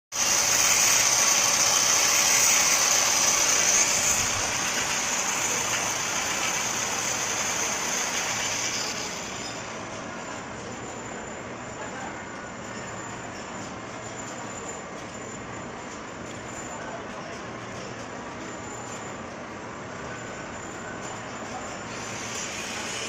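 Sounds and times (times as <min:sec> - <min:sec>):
welding arc sizzling: 0:00.1 - 0:09.8, 0:21.7 - 0:23.0.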